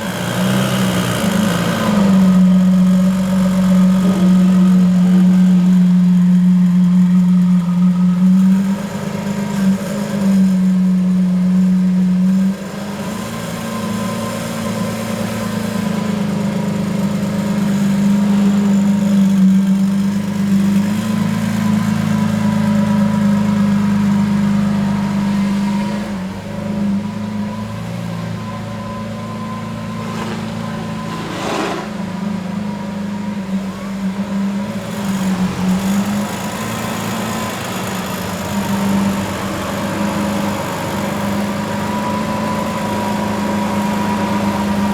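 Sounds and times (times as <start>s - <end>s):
car engine running: 29.4s - 32.4s.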